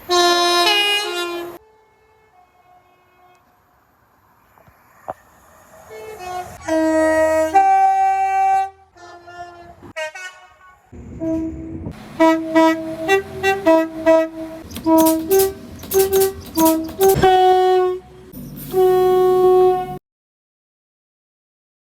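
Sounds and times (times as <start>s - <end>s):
two-tone train horn: 0.0s - 3.5s, 5.9s - 20.0s
low rumble: 11.0s - 12.2s.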